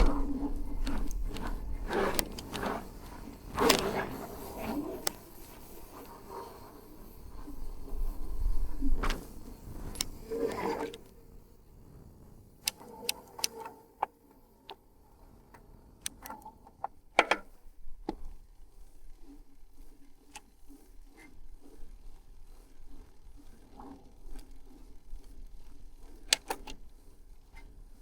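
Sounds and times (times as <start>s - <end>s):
rustling handling noise: 0.0s - 11.2s
mechanical clicks and taps: 9.9s - 11.1s, 12.6s - 14.8s, 26.1s - 26.8s.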